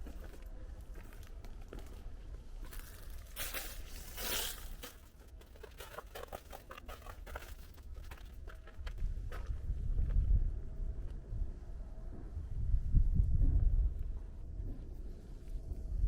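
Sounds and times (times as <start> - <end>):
footsteps on littered path: 0.0 - 10.3
scraping rustle: 2.6 - 8.8.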